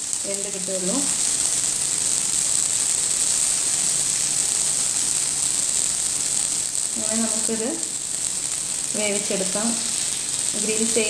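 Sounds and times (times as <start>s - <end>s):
chicken sizzling on a griddle: 0.0s - 11.0s.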